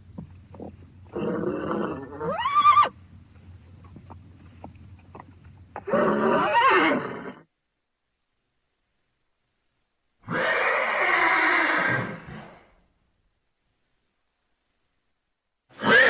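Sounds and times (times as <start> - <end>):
horse whinnying: 1.1 - 3.0, 5.8 - 7.4, 10.2 - 12.6, 15.7 - 16.0.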